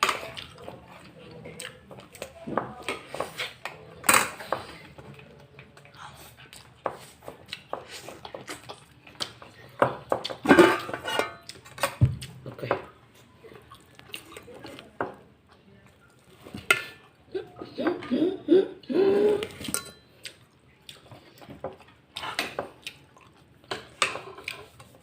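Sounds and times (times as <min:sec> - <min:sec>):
utensils clinking against dish: 0:10.1 - 0:12.1, 0:19.5 - 0:20.2.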